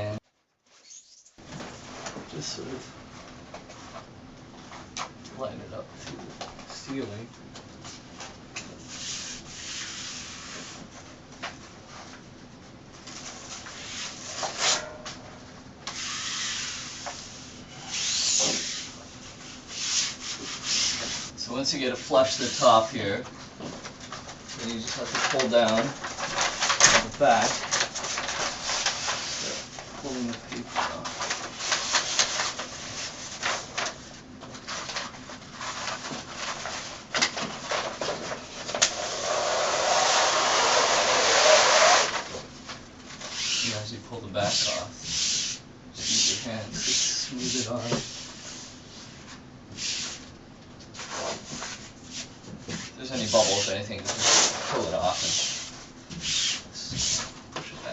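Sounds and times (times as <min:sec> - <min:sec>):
liner peeling hiss: 0:15.9 - 0:21.3, 0:38.8 - 0:42.3, 0:53.0 - 0:57.3
paper backing rustling against wall: 0:15.9 - 0:57.9
paper crinkling: 0:23.8 - 0:38.9.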